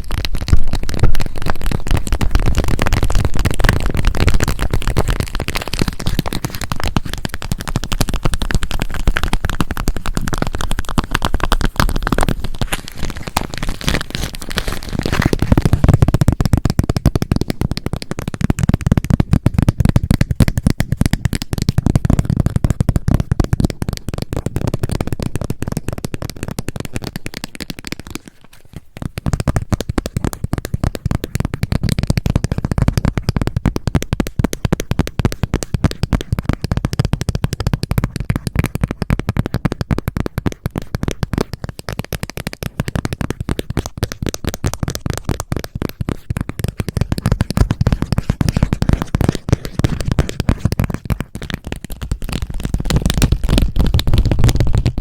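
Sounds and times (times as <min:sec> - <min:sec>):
plastic package crinkling: 0:00.0 - 0:18.1.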